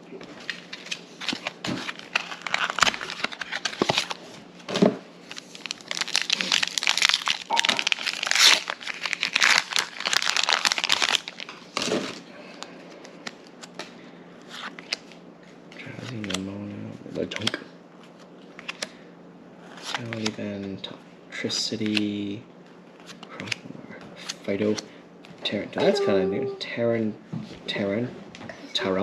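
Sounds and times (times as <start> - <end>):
foil wrapper crinkling and tearing: 0.5 - 4.2, 5.2 - 11.8.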